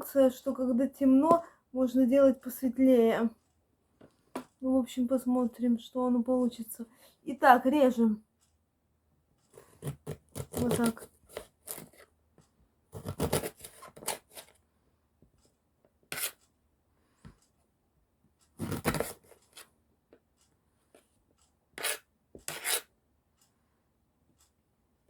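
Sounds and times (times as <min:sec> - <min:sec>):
knife cutting on cutting board: 0:09.6 - 0:12.0, 0:13.0 - 0:14.5, 0:16.1 - 0:16.4, 0:18.6 - 0:19.6, 0:21.8 - 0:22.9.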